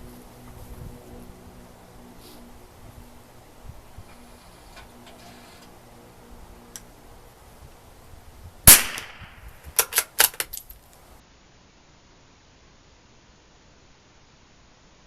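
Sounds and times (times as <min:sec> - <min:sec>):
rifle shot: 0:08.7 - 0:10.3
rifle bolt clicking: 0:09.8 - 0:10.7.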